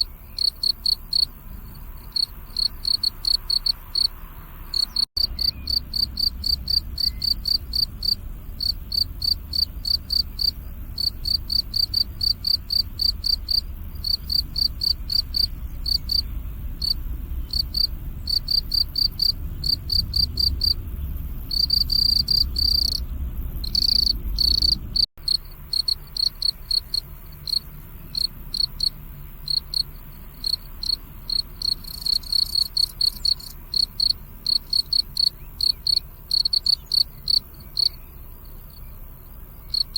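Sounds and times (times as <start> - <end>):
crickets chirping: 0.0 - 39.9
low rumble: 3.9 - 25.8.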